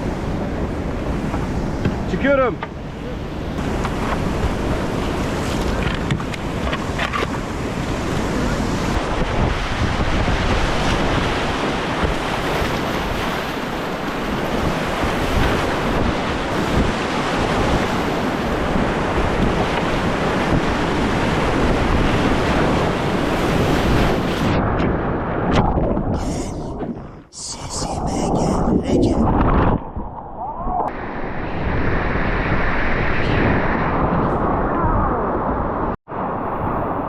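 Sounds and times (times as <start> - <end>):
wind buffeting microphone: 0.0 - 37.0.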